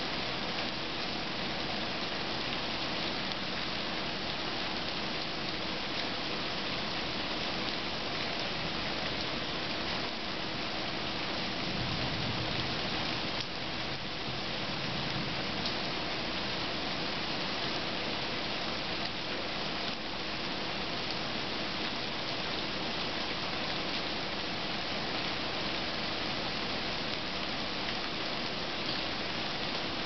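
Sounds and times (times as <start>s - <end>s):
heavy rain falling: 0.0s - 30.0s
low thunder rumble: 11.7s - 15.4s.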